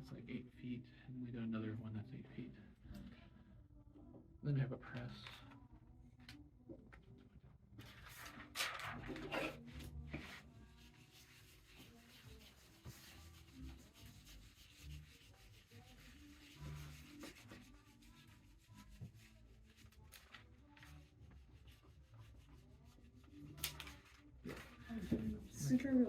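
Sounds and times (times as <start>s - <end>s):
rubbing and scraping on a print: 7.8s - 26.0s.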